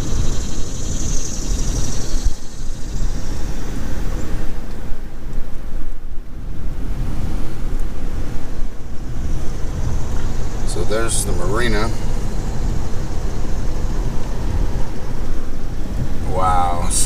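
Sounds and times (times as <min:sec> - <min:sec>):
vehicle road noise: 0:00.0 - 0:17.0
wind rumbling on microphone: 0:00.0 - 0:17.0.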